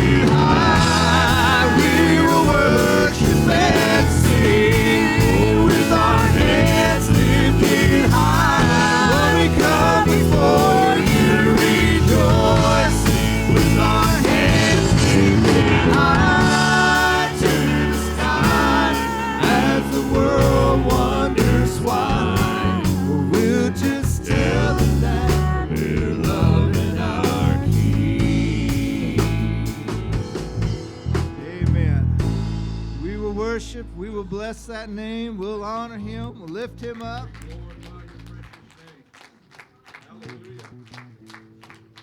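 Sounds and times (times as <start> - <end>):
drum kit steady beat: 0.0 - 33.3
praise band playing worship song: 0.0 - 42.0.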